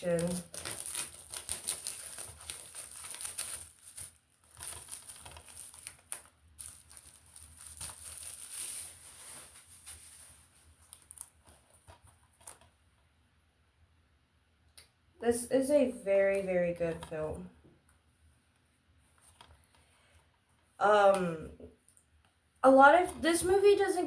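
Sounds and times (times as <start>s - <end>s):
plastic packaging crinkling: 0.0s - 12.7s.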